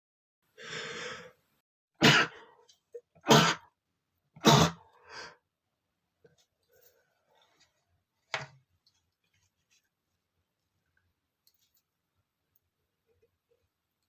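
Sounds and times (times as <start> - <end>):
man sneezing: 2.0 - 2.5, 3.2 - 3.7, 4.4 - 4.8.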